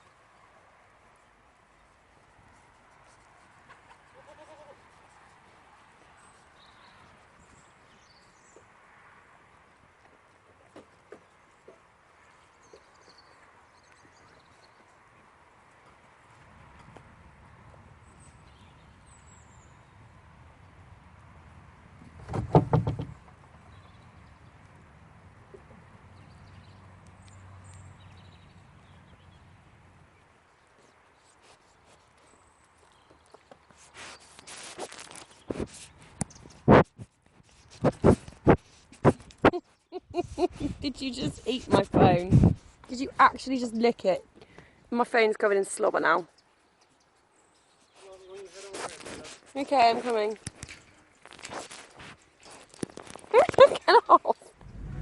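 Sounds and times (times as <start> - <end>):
farm animal call: 3.7 - 4.8
goat bleating: 4.1 - 4.8.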